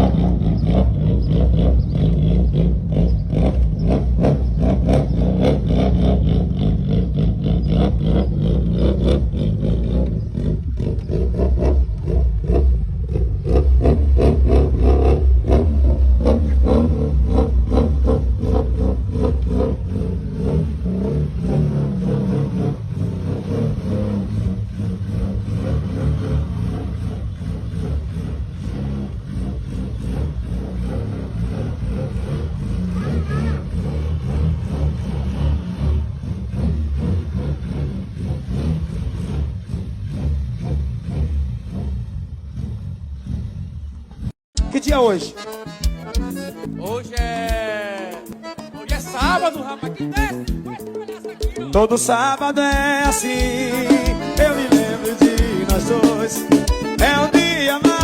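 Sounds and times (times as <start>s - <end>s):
loud distorted bass-heavy music: 44.6s - 58.0s.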